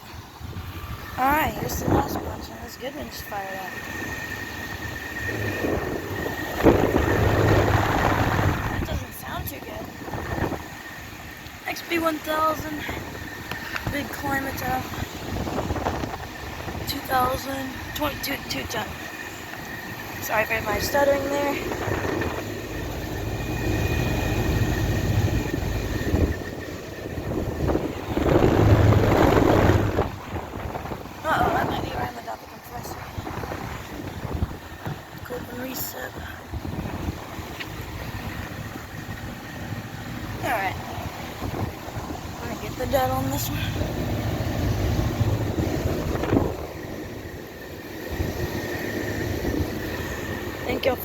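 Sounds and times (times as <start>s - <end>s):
air conditioner fan hum: 0.0s - 51.0s
thin whine: 0.0s - 51.0s
rush of air: 23.5s - 31.3s.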